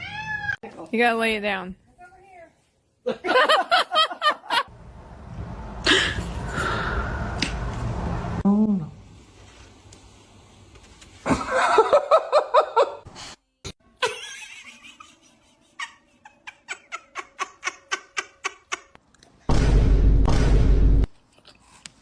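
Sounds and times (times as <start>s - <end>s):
person laughing: 5.8s - 6.3s, 11.3s - 13.0s.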